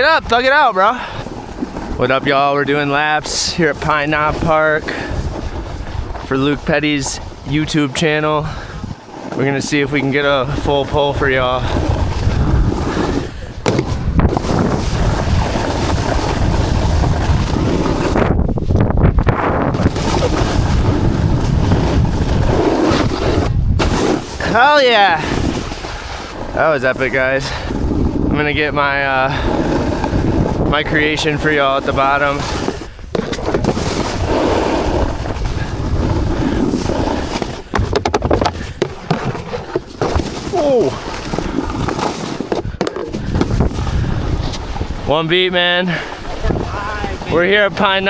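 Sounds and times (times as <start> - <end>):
snowboard scraping over snow: 0.0 - 48.0
wind buffeting microphone: 0.0 - 48.0
sharp crackles and knocks: 11.9 - 24.5, 31.5 - 45.0.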